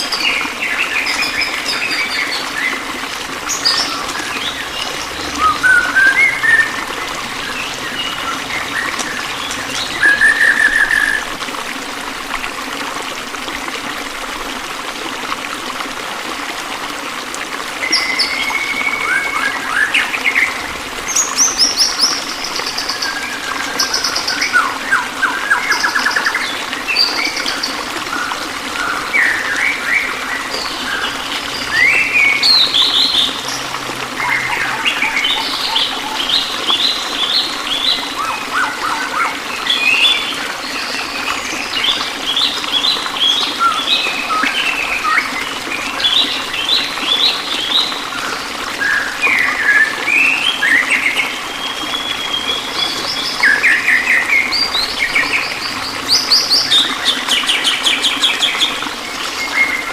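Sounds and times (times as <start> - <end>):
running water: 0.0 - 59.9
songbirds chirping and singing: 0.2 - 11.4.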